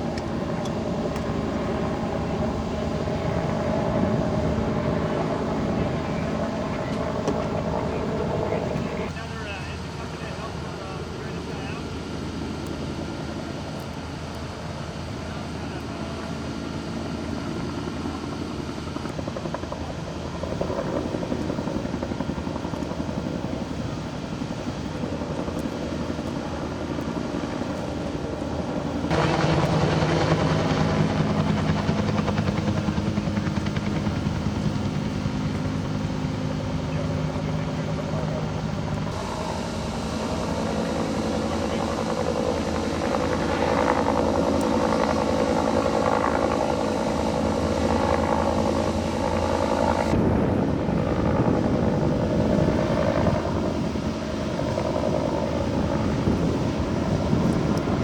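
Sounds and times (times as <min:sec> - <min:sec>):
faint voices: 0:04.8 - 0:11.9, 0:36.6 - 0:46.6.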